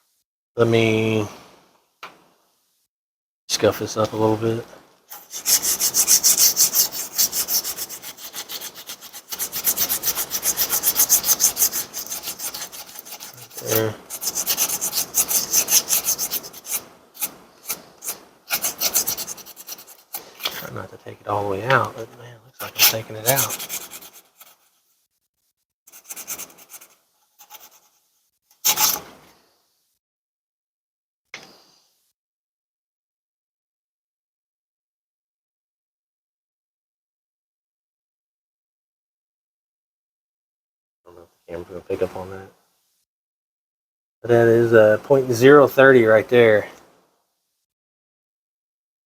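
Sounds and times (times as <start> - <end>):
scuffing strokes on metal piston: 5.1 - 20.7, 22.6 - 24.6, 25.9 - 28.0, 28.6 - 29.0
hand scrubbing abrasive on metal: 5.1 - 20.8, 22.6 - 24.7, 25.9 - 28.0, 28.6 - 29.1.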